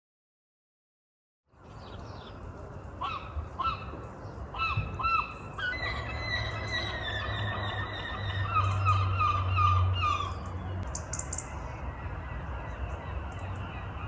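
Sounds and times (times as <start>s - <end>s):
long held bird calls: 3.0s - 14.0s.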